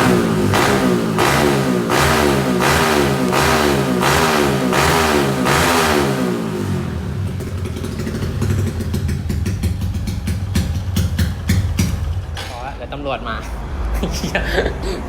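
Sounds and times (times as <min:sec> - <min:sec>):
motorcycle engine revving: 0:00.0 - 0:13.0
lumpy popping engine idle: 0:07.2 - 0:12.8.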